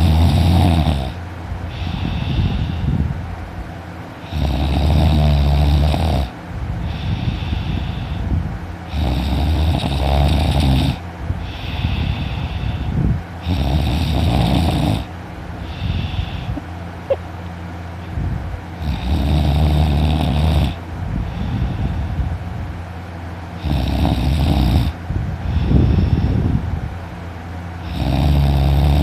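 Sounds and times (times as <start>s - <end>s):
man snoring loudly: 0.0s - 2.6s, 4.2s - 6.3s, 8.9s - 12.6s, 13.4s - 15.1s, 18.8s - 20.8s, 23.6s - 25.9s, 27.8s - 29.0s
quiet breaths: 10.9s - 13.6s, 15.6s - 17.2s.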